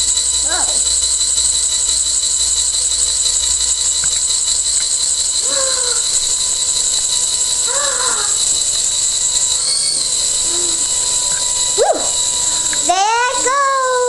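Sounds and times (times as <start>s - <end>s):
toy electric motor whining: 7.6s - 14.0s.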